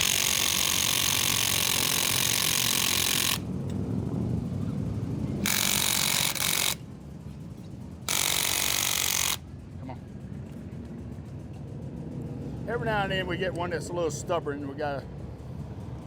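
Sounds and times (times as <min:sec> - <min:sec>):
impact wrench hammering: 0:00.0 - 0:03.4, 0:05.4 - 0:06.8, 0:08.1 - 0:09.4.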